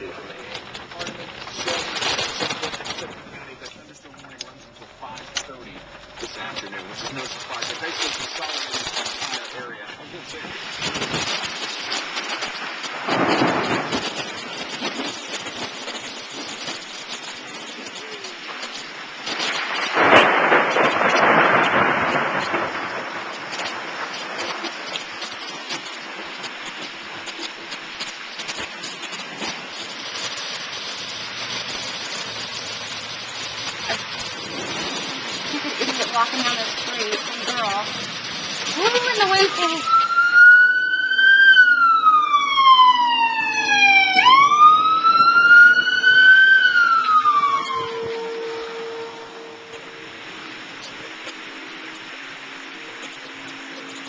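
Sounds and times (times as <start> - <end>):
rain hiss with ticks: 0.0 - 54.0
thunderstorm rushing surge: 0.0 - 54.0
siren wailing: 38.6 - 54.0.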